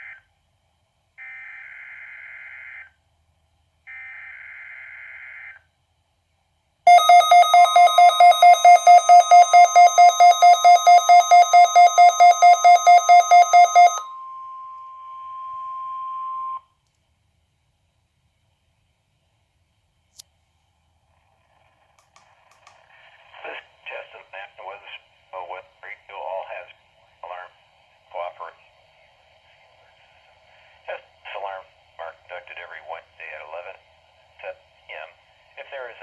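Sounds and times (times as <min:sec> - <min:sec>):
alert radio alarm beeping: 0:06.9 - 0:16.6
steady single tone: 0:06.9 - 0:16.7.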